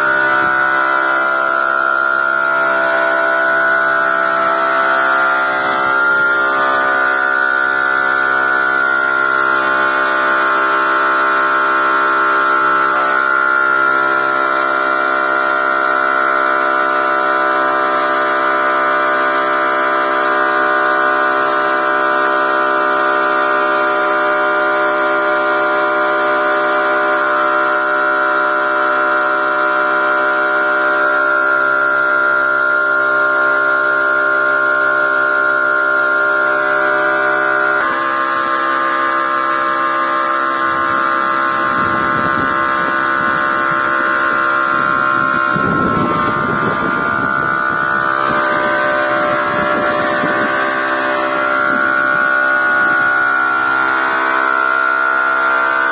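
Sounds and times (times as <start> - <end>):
high-pitched machine whine: 0.0 - 55.9.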